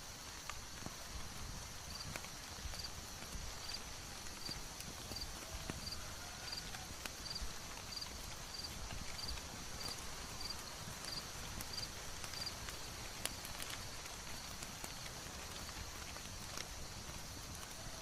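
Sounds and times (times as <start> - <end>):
fire crackling and popping: 0.0 - 18.0
horse hooves clip-clop: 0.0 - 18.0.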